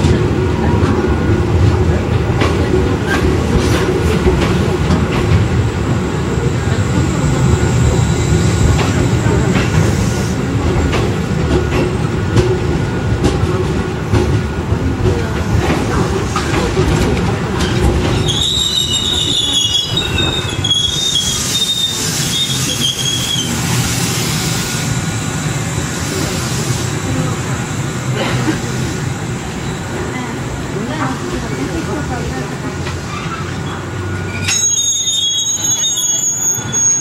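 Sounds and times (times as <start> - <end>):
train wheels rumbling over rail joints: 0.0 - 35.8
train wheels squealing: 17.6 - 25.3, 33.1 - 37.0.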